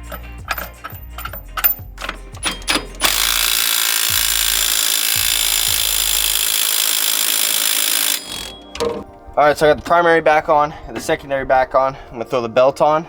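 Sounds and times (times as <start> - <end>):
tools clicking and knocking: 0.0 - 10.1
power tool hissing: 2.2 - 8.5.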